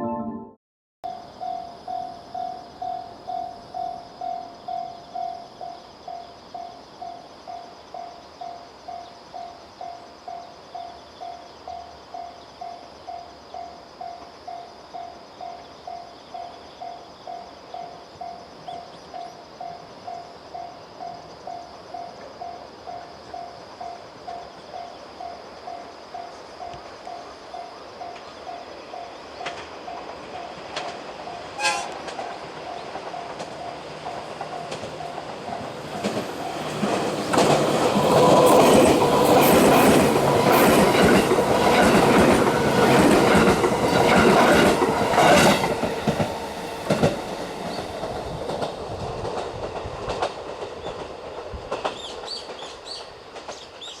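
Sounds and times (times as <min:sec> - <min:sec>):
electric train passing: 0:01.1 - 0:54.0
wheels clacking over rail joints: 0:29.4 - 0:54.0
level crossing warning bell: 0:32.6 - 0:39.3.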